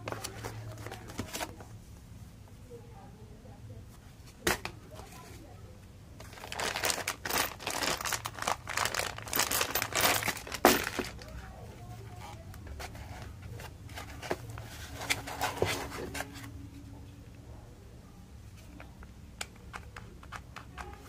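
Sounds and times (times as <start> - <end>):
packaging crinkling and tearing: 6.2 - 11.3.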